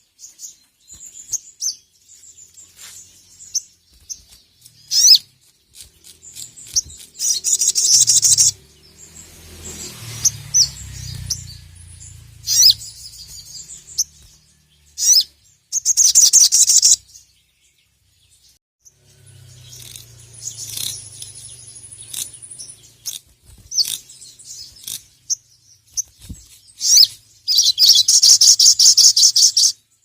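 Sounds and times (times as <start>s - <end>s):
fast rattling twitter: 0.0s - 30.0s
sunbird singing: 0.0s - 30.0s.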